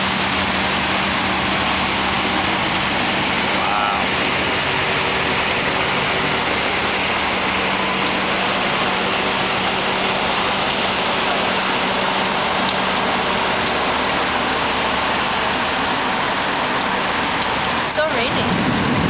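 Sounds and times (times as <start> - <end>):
heavy rain pouring: 0.0 - 19.0.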